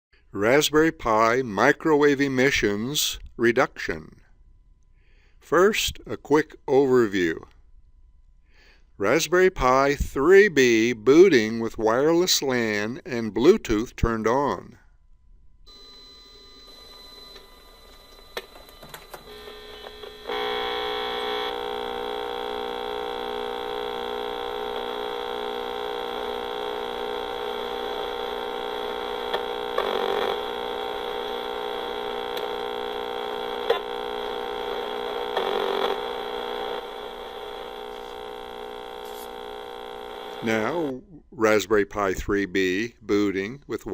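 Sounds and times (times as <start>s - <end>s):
buzzing hum of stacked tones: 15.3s - 41.2s.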